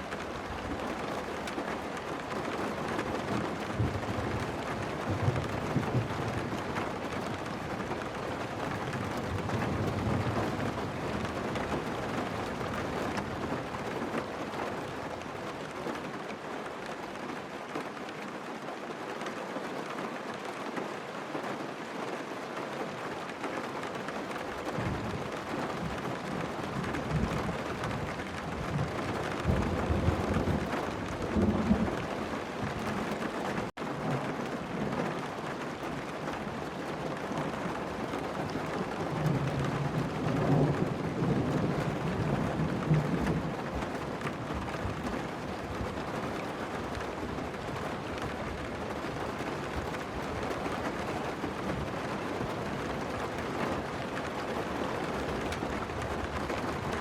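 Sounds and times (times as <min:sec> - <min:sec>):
rain pattering on a car: 0:00.0 - 0:57.0
low thunder rumbles: 0:24.8 - 0:35.0, 0:38.4 - 0:50.4.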